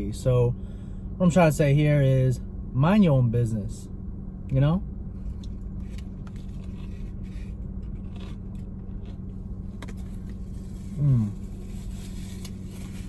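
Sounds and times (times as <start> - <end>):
car engine idling hum: 0.0 - 13.0
man humming: 11.0 - 11.4.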